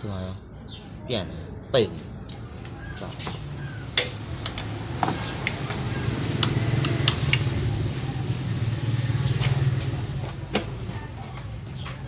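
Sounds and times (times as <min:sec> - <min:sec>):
small motorcycle engine running: 0:04.8 - 0:10.4.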